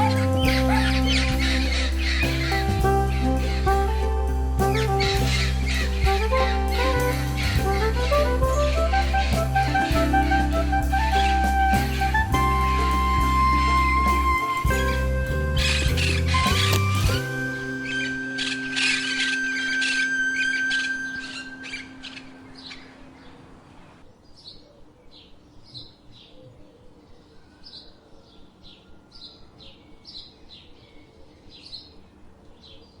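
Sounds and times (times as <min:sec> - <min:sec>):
music: 0:00.0 - 0:22.5.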